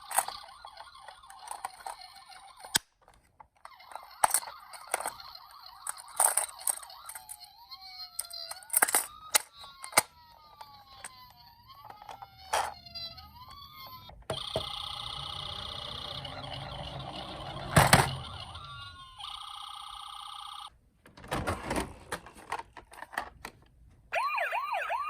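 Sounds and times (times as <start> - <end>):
toy electronic siren wailing: 0.0 - 2.8, 3.6 - 20.7, 24.1 - 25.0
clicks of toy being handled: 0.0 - 7.5, 8.1 - 12.8, 22.1 - 23.8
loud steady siren: 14.3 - 20.6, 24.1 - 25.0.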